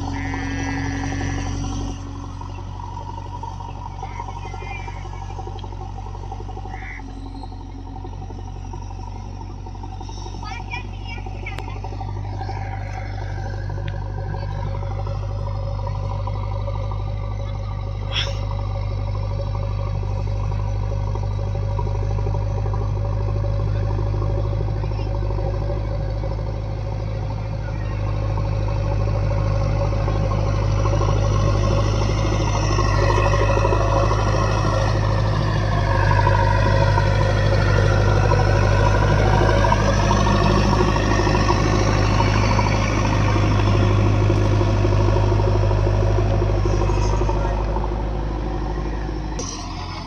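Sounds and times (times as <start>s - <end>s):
diesel engine running: 0.0s - 50.0s
high machine whine: 0.0s - 50.0s.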